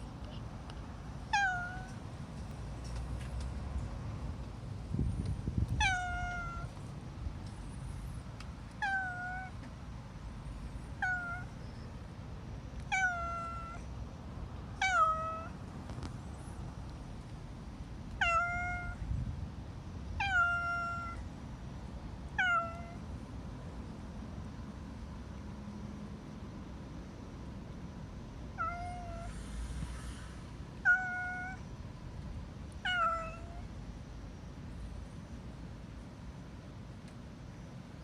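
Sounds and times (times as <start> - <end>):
cat meowing: 1.3 - 2.0, 5.8 - 6.7, 8.8 - 9.6, 11.0 - 11.5, 12.9 - 13.8, 14.8 - 15.6, 18.1 - 19.0, 20.2 - 21.2, 22.4 - 23.0, 28.6 - 29.3, 30.8 - 31.6, 32.8 - 33.7.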